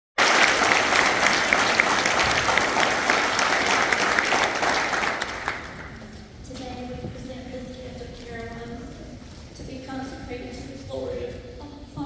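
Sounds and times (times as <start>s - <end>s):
congregation applauding: 0.2s - 6.1s.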